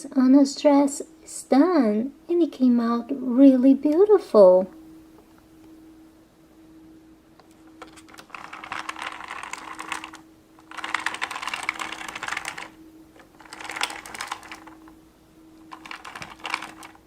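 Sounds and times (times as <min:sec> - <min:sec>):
faint steady hum: 0:00.0 - 0:17.0
plastic toy parts clattering: 0:07.8 - 0:14.8, 0:15.7 - 0:17.0.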